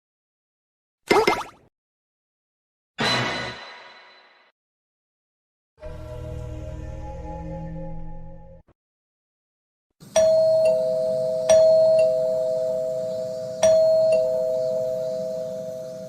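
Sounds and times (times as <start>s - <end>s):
ding-dong doorbell chime: 10.2s - 16.0s.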